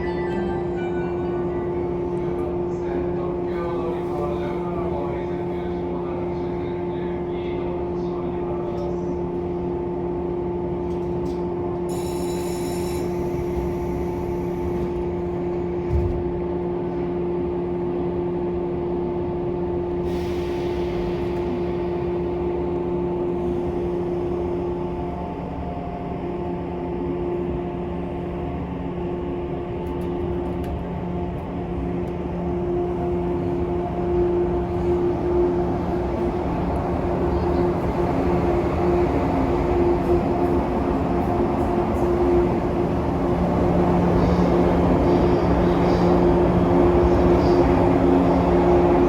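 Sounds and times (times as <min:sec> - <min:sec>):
high-pitched tone: 0:00.0 - 0:02.1
train wheels rumbling on rail: 0:01.9 - 0:49.0.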